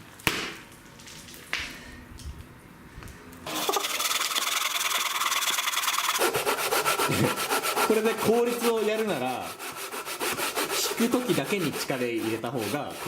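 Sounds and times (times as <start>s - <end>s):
hand saw rasping through wood: 3.6s - 13.0s.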